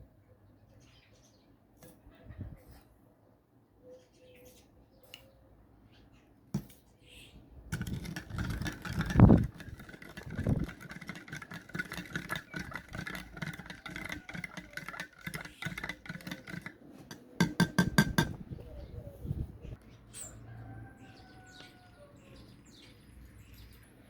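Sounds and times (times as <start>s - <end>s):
electric pump rattling: 7.7s - 18.4s.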